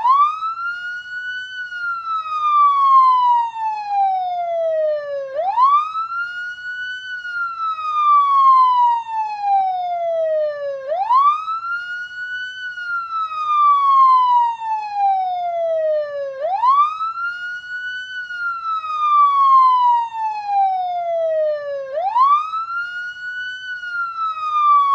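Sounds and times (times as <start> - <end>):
police siren wailing: 0.0 - 24.9.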